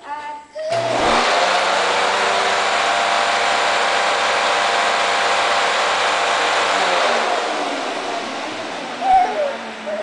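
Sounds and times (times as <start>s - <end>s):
vacuum cleaner running: 0.7s - 10.0s.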